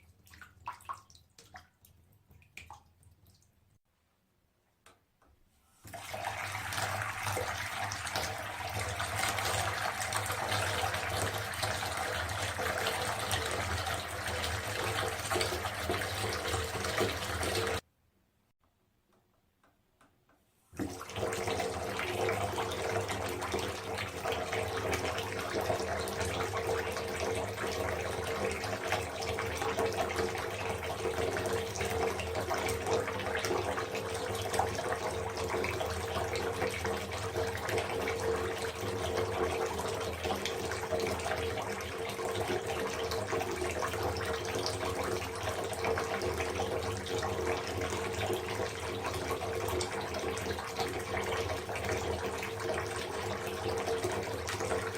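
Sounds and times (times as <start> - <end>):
faint water drips: 0.0 - 3.8.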